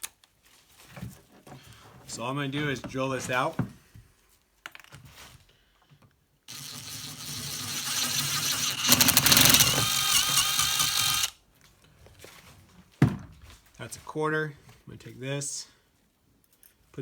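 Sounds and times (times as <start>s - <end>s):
electric drill boring into metal: 6.5s - 11.4s.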